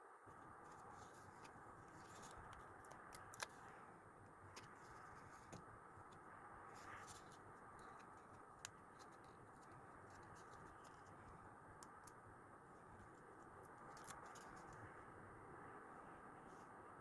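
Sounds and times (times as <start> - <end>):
paper and stickers handled: 0.4 - 3.8, 4.4 - 5.7, 6.6 - 14.9.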